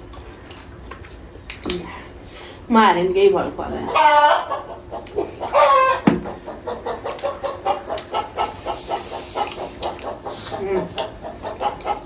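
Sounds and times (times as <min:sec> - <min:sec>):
chickens clucking: 0:03.3 - 0:12.0.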